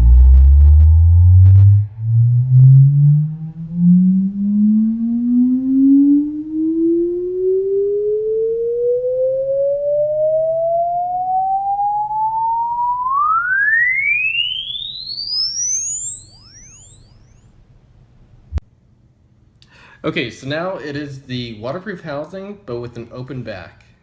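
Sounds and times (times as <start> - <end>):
sine wave tone sweeping upward: 0.0 - 17.6.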